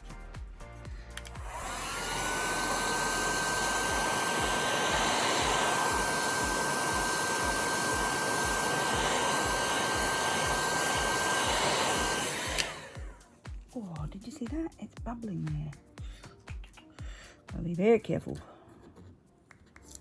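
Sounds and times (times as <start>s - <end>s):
heat gun blowing with whine: 1.1s - 13.2s.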